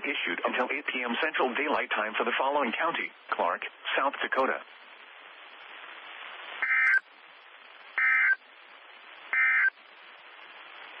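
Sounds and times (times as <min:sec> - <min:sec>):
radio hiss: 0:00.0 - 0:11.0
alert data tone bursts: 0:06.6 - 0:07.0, 0:08.0 - 0:08.4, 0:09.3 - 0:09.8.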